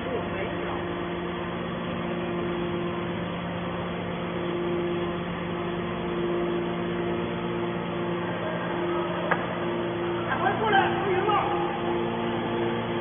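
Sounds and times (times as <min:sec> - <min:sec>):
higher tone in motor hum: 0:00.0 - 0:13.0
hydraulic power unit humming: 0:00.0 - 0:13.0.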